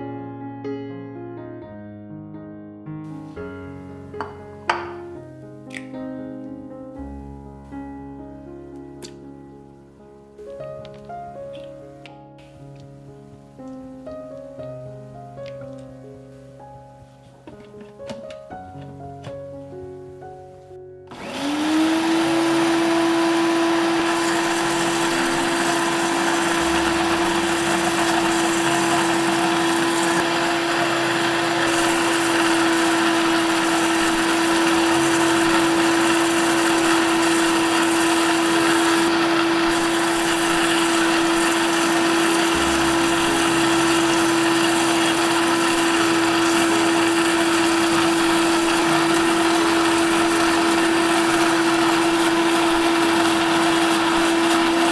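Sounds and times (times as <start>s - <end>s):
electric blender running: 21.1s - 54.9s.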